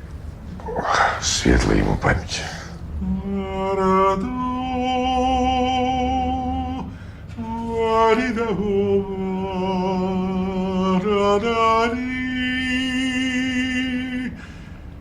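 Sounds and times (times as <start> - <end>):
person singing unaccompanied: 3.0 - 14.4.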